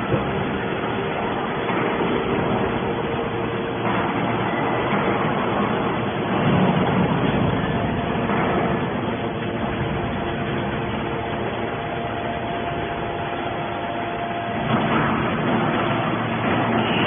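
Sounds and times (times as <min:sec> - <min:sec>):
hydraulic baler humming: 0:00.0 - 0:17.0.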